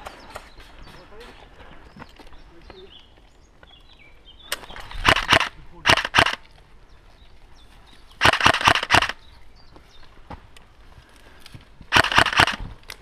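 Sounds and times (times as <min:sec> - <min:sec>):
airsoft rifle firing bursts: 0:05.0 - 0:06.4, 0:08.2 - 0:09.2, 0:11.9 - 0:12.6.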